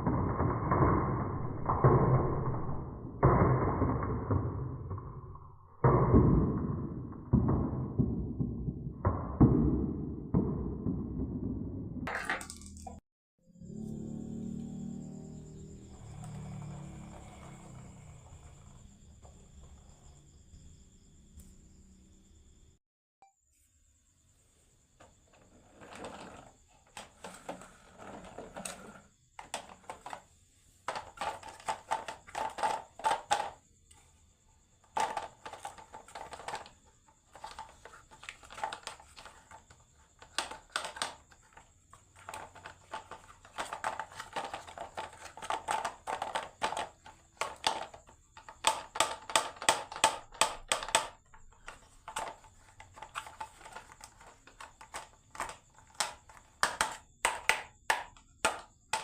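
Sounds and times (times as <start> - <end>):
marbles clattering down wooden run: 12.0 - 13.0, 42.2 - 57.8.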